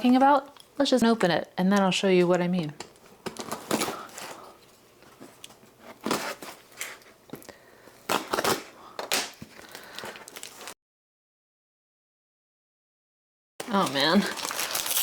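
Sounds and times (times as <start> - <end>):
packing tape ripping: 8.1 - 10.7, 13.6 - 15.0.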